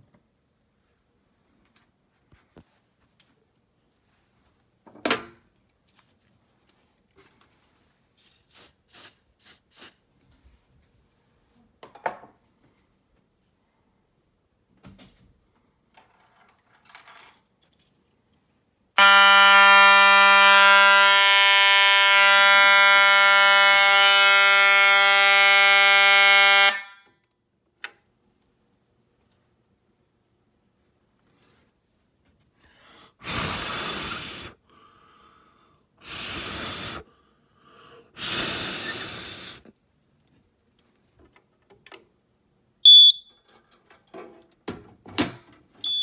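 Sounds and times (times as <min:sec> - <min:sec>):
fire alarm buzzing: 0:19.0 - 0:27.1, 0:42.8 - 0:43.3.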